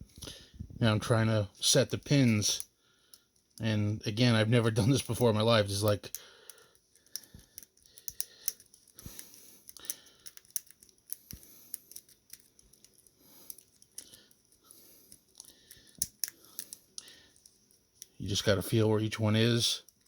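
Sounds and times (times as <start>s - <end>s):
lock pick clicking in padlock: 6.0s - 8.8s, 9.6s - 14.0s, 15.1s - 17.1s.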